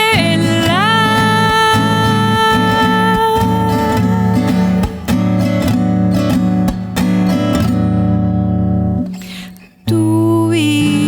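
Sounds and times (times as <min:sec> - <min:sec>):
woman singing: 0:00.0 - 0:05.9, 0:09.4 - 0:11.0
strummed acoustic guitar: 0:00.0 - 0:11.0.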